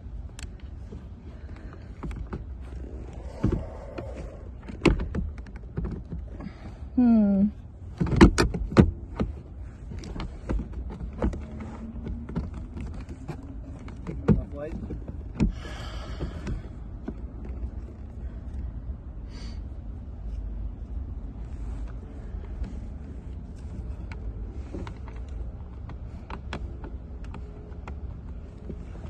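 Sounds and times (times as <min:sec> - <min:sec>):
low steady rumble: 0:00.0 - 0:29.0.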